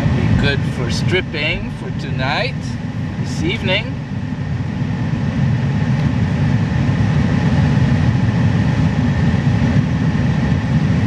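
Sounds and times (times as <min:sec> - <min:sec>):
vehicle rumble from inside cab: 0:00.0 - 0:06.9
faint high whine: 0:00.0 - 0:07.2.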